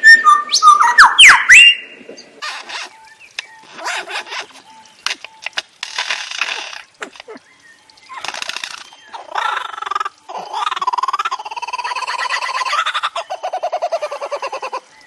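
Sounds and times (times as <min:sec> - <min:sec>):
bird harsh calls and clucks: 0:02.2 - 0:15.0
bird pulsing pitched call: 0:07.0 - 0:15.0.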